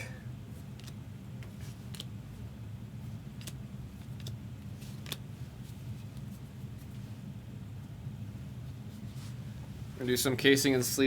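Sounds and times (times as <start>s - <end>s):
steady low hum: 0.0s - 11.0s
cards being handled: 0.6s - 2.2s, 3.1s - 7.0s
card clicks and snaps: 0.8s - 1.0s.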